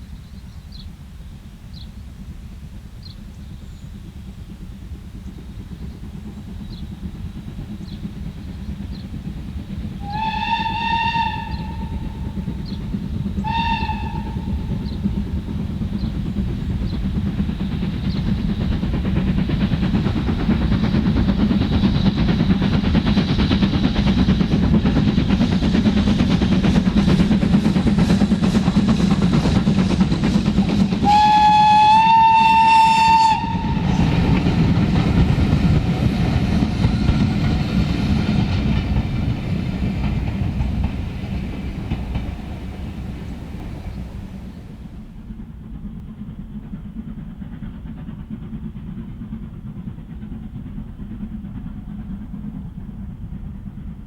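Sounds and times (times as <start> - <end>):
train rumble: 0.0 - 54.0
steam locomotive whistle: 10.0 - 12.8, 13.4 - 15.2, 30.7 - 35.0.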